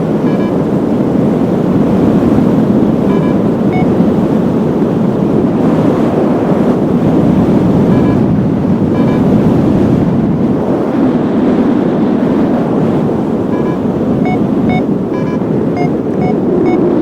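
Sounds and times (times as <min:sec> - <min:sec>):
wind rushing over microphone: 0:00.0 - 0:17.0
short electronic beeps: 0:00.2 - 0:00.6, 0:03.0 - 0:04.0, 0:07.8 - 0:08.3, 0:08.9 - 0:09.4, 0:13.5 - 0:16.9.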